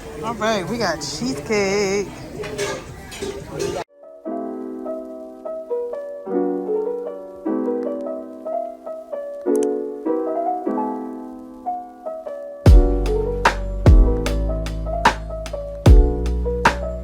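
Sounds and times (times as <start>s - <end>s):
piano chords: 3.5s - 17.0s.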